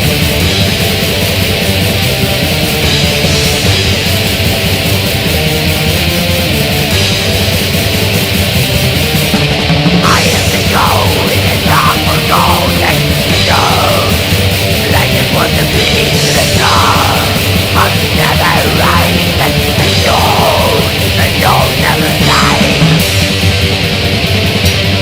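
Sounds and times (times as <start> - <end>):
heavy metal music: 0.0 - 25.0
harsh screamed vocals: 10.0 - 23.2.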